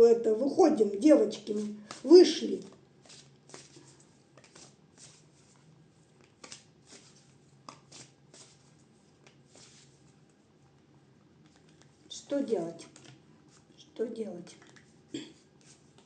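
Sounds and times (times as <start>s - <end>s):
cards shuffling: 1.0s - 10.4s, 11.4s - 13.8s, 14.4s - 16.0s.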